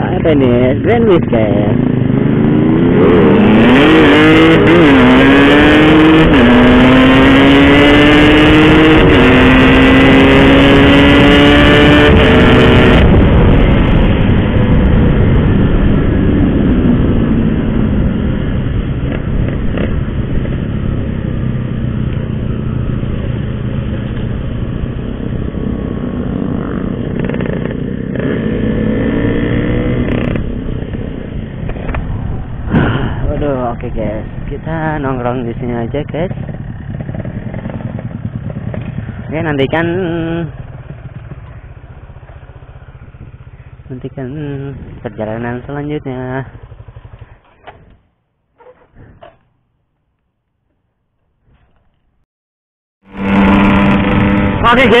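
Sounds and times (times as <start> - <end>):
motorcycle engine accelerating: 0.0 - 49.8, 53.0 - 55.0.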